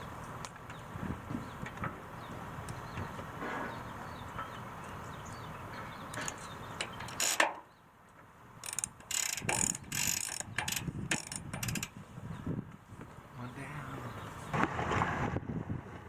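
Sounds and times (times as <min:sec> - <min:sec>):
ratchet clicking: 0:06.8 - 0:07.5, 0:08.6 - 0:12.0.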